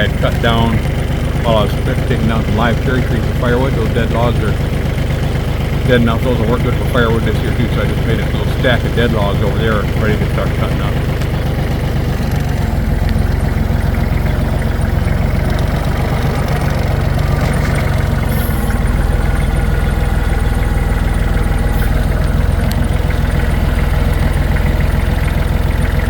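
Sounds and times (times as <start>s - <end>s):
tractor engine running: 0.0s - 26.0s.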